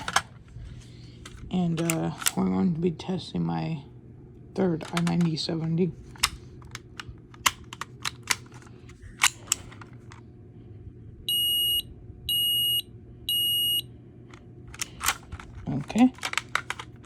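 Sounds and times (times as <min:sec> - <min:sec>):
clicks and knocks of handling: 0:00.0 - 0:00.4, 0:01.0 - 0:02.5, 0:04.6 - 0:10.2, 0:14.3 - 0:17.0
smoke alarm beeps: 0:11.3 - 0:13.9.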